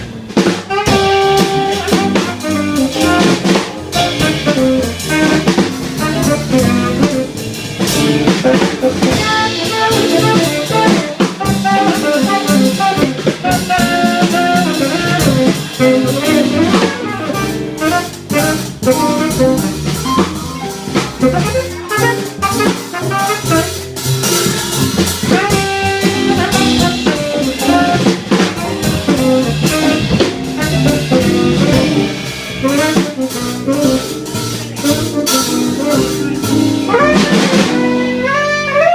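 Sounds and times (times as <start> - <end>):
drum kit: 0.0 - 38.9
piano: 0.0 - 38.9
lead horn line: 0.7 - 7.4.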